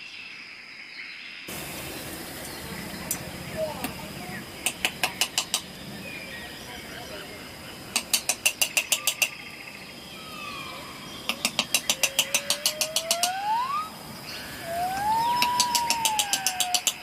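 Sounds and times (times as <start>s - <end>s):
rapid mechanical clicking: 11.3s - 13.4s.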